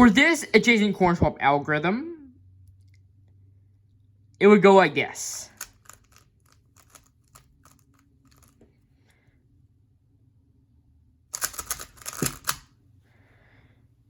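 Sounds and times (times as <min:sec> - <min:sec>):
puzzle cube turning clicks: 0:05.5 - 0:08.6, 0:11.4 - 0:12.7.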